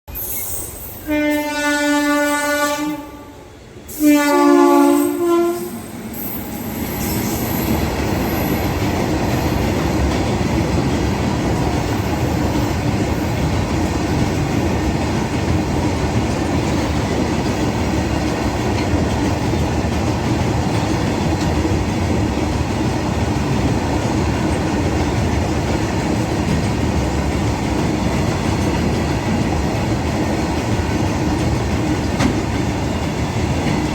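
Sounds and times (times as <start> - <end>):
passing train rumble and rail noise: 0.1 - 33.9
train horn blasts: 1.0 - 6.0.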